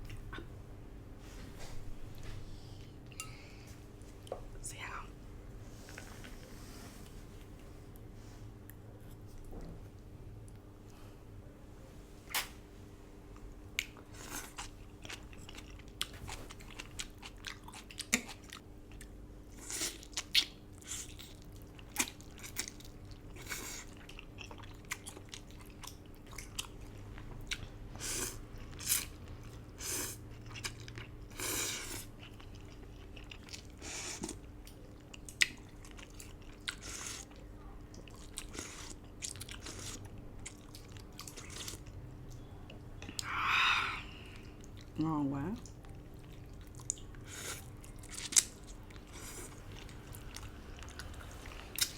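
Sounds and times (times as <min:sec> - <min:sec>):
person chewing with wet smacks: 0:13.4 - 0:43.3, 0:44.4 - 0:51.9.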